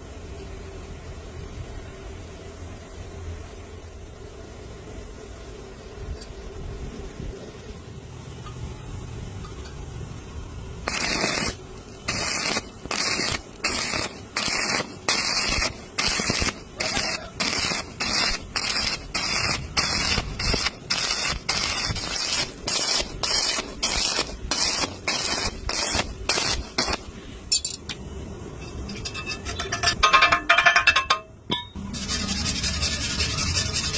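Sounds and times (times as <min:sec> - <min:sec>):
welding arc sizzling: 0:10.8 - 0:28.0, 0:31.8 - 0:33.9.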